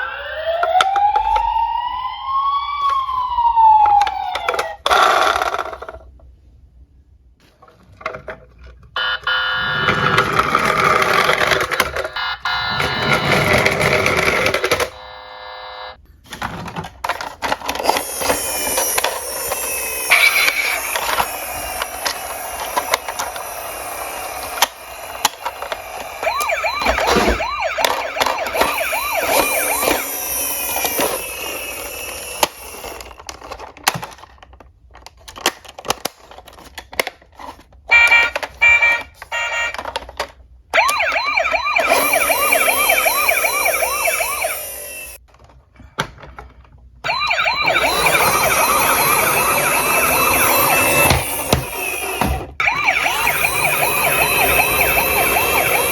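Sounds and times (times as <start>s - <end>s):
toy sirens warbling: 0.0s - 5.8s, 9.0s - 16.0s, 17.7s - 33.6s, 37.9s - 40.0s, 40.7s - 45.2s, 47.0s - 55.9s
high beeping tone: 47.1s - 55.9s.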